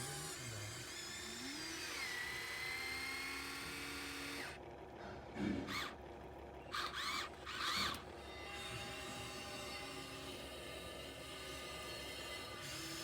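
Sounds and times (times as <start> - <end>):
small electric motor whining: 0.0 - 4.6, 6.7 - 13.0.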